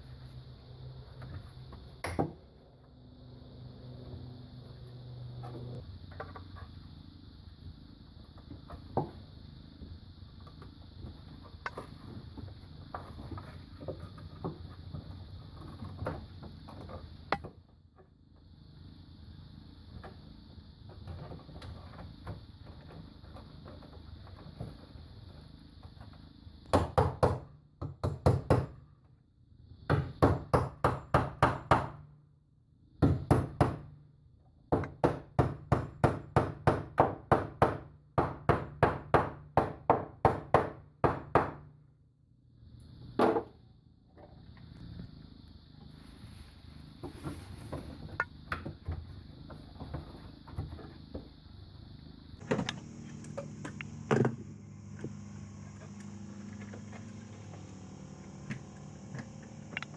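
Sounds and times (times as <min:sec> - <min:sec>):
rapid hammering knocks: 0:34.7 - 0:41.6.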